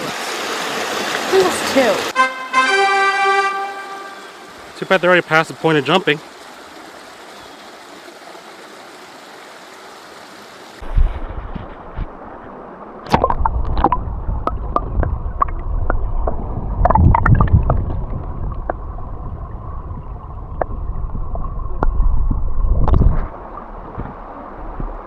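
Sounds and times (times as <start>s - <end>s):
stream water running: 0.0s - 25.0s
low rumble on microphone: 10.8s - 25.0s.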